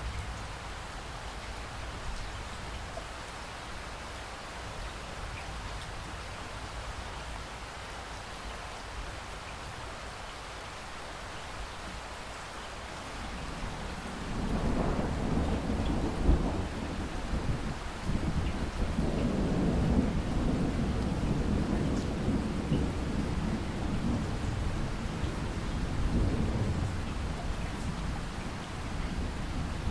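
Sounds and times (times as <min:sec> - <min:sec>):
rain hissing: 0:10.7 - 0:29.9
low thunder rumble: 0:13.3 - 0:29.9.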